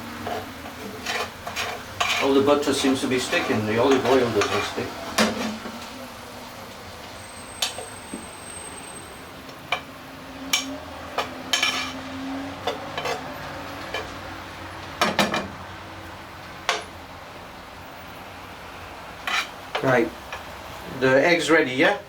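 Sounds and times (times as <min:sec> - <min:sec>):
utensils clinking against dishes: 0:00.2 - 0:05.6, 0:07.4 - 0:09.0, 0:10.5 - 0:12.0, 0:12.6 - 0:14.2.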